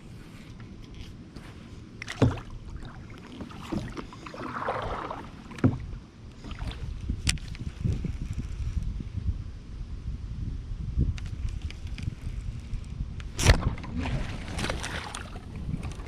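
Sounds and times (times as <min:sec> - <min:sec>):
sharp knocks on kayak: 0:02.1 - 0:02.5.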